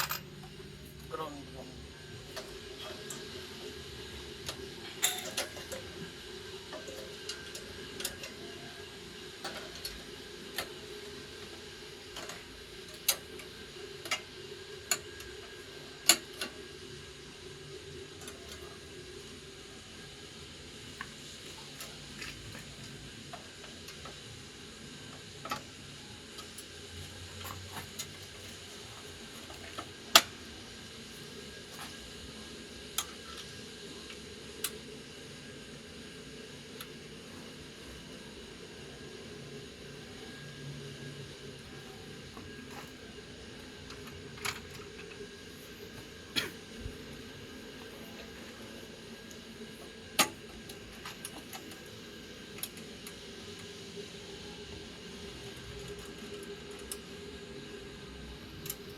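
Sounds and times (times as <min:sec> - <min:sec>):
steady low hum: 0:00.0 - 0:58.9
tools clicking and clinking: 0:04.5 - 0:05.9.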